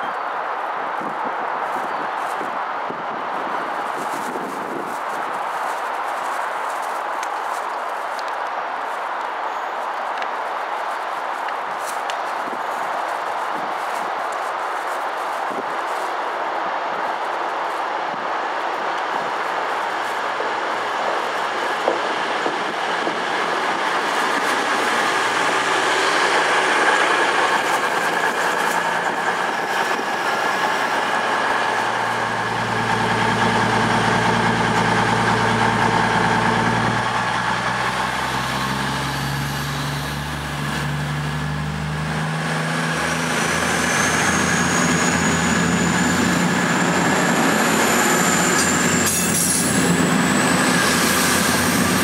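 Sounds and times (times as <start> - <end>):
train engine hum: 0.0 - 52.0
train wheels rumbling on rail: 1.0 - 52.0
high wheel squeal: 43.1 - 52.0.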